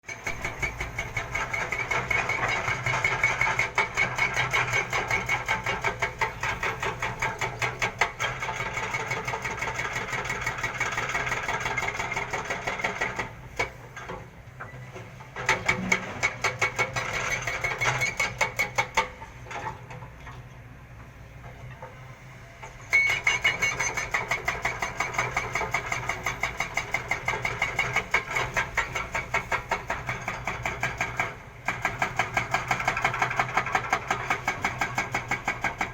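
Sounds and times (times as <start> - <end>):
excavator diesel engine running: 0.2 - 18.5.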